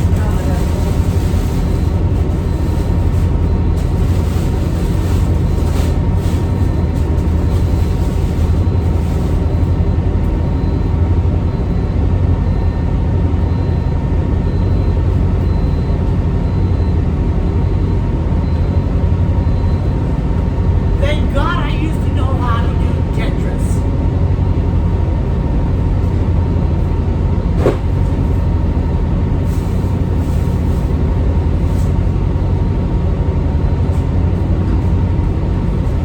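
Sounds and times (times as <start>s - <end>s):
boat engines droning: 16.3s - 29.4s.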